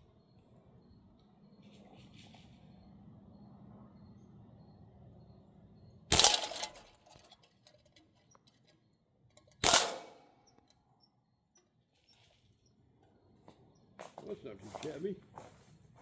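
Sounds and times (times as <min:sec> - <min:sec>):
bb rifle firing bursts: 0:06.1 - 0:06.9, 0:09.6 - 0:10.3.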